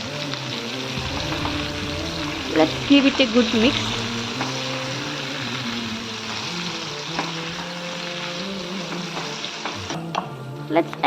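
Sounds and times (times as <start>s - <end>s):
prawns sizzling in a frying pan: 1.7s - 10.0s.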